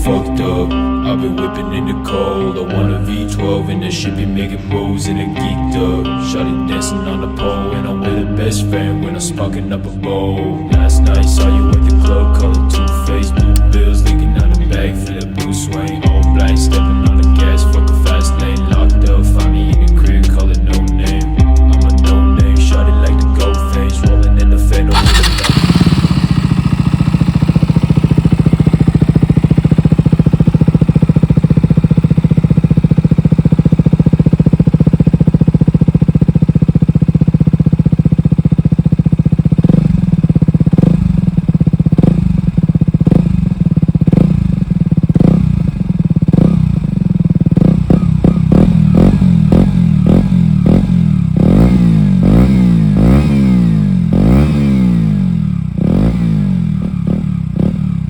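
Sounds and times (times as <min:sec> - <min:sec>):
motorcycle engine idling: 0:00.0 - 0:58.0
engine revving: 0:24.8 - 0:58.0.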